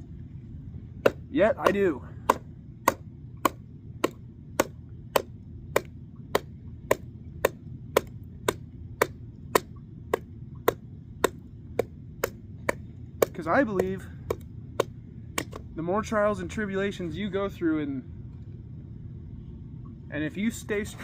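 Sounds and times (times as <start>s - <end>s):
hatchet chopping kindling: 1.0s - 15.7s.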